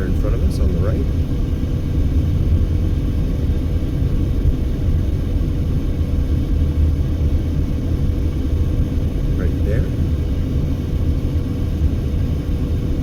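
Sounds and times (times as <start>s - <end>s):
car road and engine rumble: 0.0s - 13.0s
faint steady hum: 0.0s - 13.0s.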